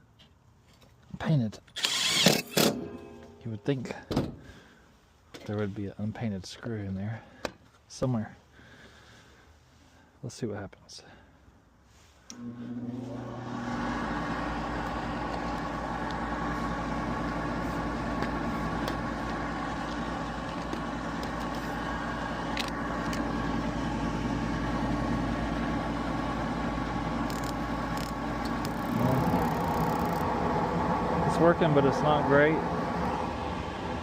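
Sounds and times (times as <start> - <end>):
inducer motor humming: 12.3 - 34.0.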